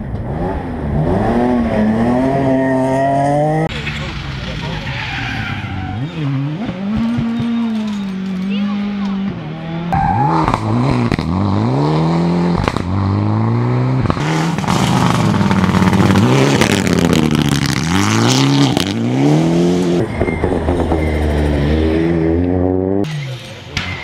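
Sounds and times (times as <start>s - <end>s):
rally car engines revving: 0.0s - 24.0s.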